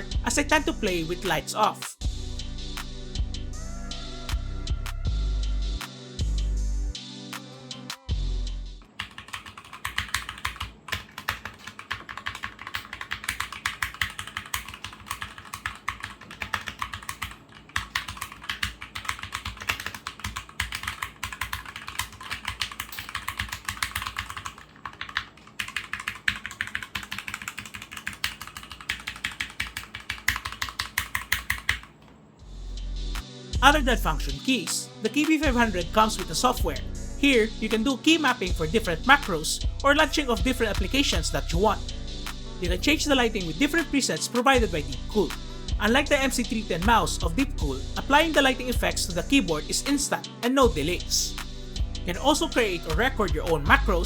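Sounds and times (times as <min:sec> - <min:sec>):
fast mechanical keyboard typing: 0:08.9 - 0:31.9.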